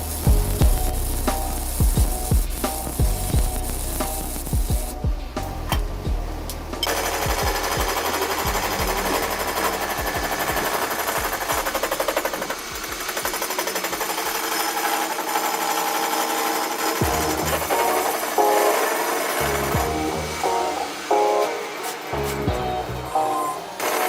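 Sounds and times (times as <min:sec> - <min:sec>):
background music: 0:00.0 - 0:13.7, 0:17.0 - 0:24.0
rapid metalworking rattling: 0:06.7 - 0:24.0.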